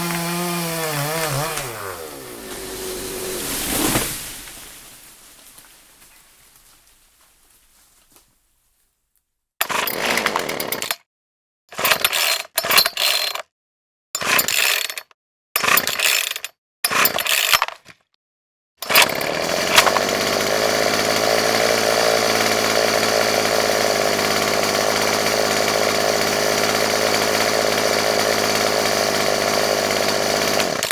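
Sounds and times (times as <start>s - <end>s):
chainsaw motor revving: 0.0s - 5.0s, 9.6s - 11.0s, 18.8s - 30.9s.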